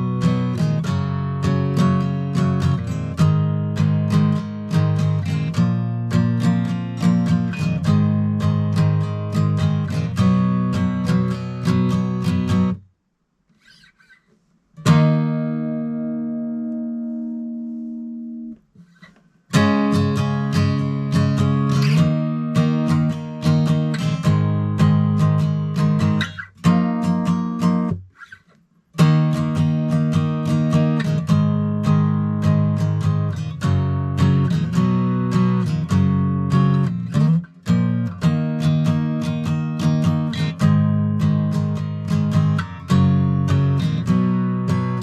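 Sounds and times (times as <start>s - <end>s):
guitar strumming: 0.0s - 12.8s, 14.8s - 45.0s
guitar chord ringing: 14.8s - 18.6s.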